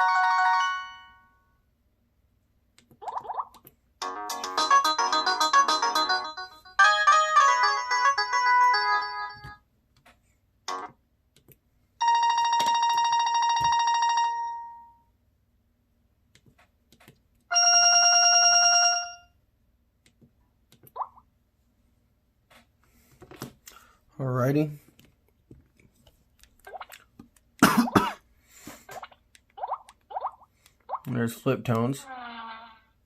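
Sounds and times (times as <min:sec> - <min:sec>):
phone ringtone melodies: 0:00.0 - 0:01.4, 0:04.0 - 0:09.6, 0:10.7 - 0:10.9, 0:12.0 - 0:15.0, 0:17.5 - 0:19.3.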